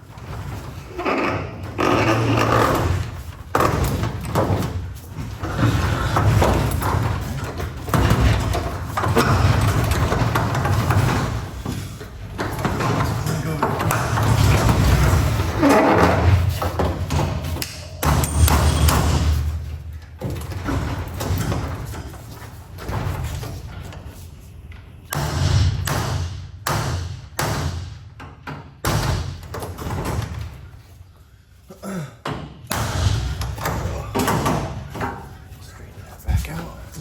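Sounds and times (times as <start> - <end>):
thuds and knocks on garage door: 0.0 - 31.0, 32.2 - 35.6.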